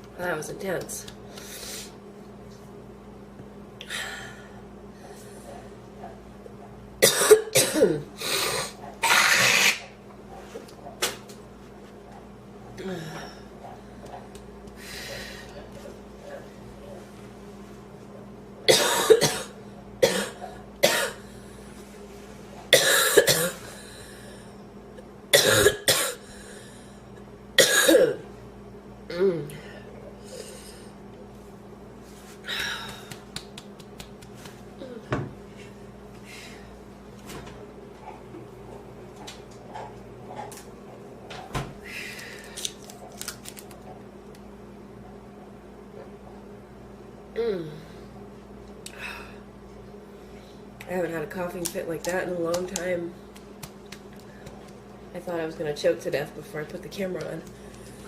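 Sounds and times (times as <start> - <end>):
steady low hum: 0.0 - 58.0
woman coughing: 7.0 - 9.6, 18.7 - 21.2, 22.7 - 23.6, 25.3 - 26.2, 27.6 - 28.3.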